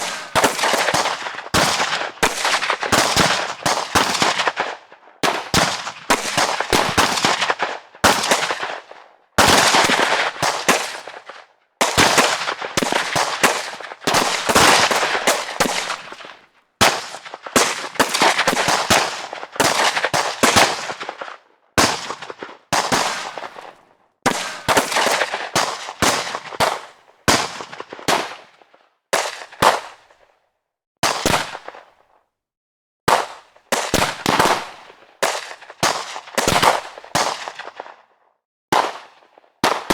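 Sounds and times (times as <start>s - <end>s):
automatic gunfire bursts: 0.0s - 11.2s, 11.8s - 21.2s.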